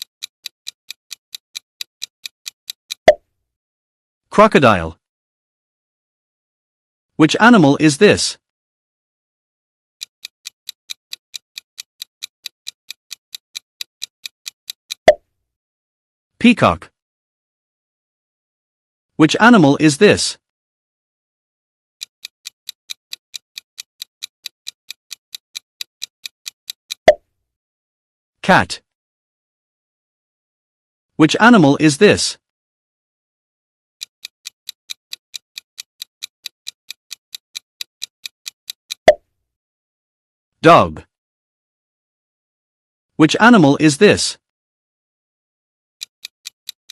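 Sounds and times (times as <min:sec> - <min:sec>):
quick clock ticks: 0:00.0 - 0:03.2, 0:10.0 - 0:15.2, 0:22.0 - 0:27.2, 0:34.0 - 0:39.2, 0:46.0 - 0:46.9.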